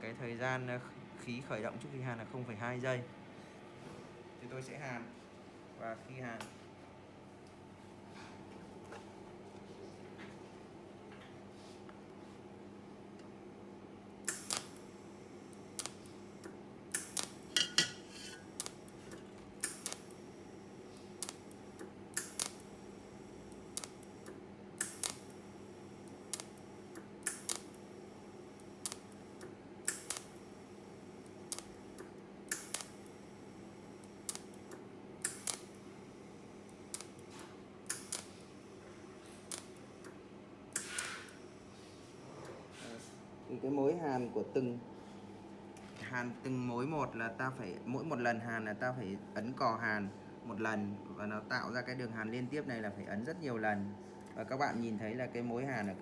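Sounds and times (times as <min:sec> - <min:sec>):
steady low hum: 0:00.0 - 0:56.0
welding arc snaps: 0:14.2 - 0:20.3, 0:21.0 - 0:27.8, 0:28.6 - 0:30.5, 0:31.1 - 0:33.2, 0:34.0 - 0:35.9, 0:36.6 - 0:38.5, 0:39.3 - 0:41.4.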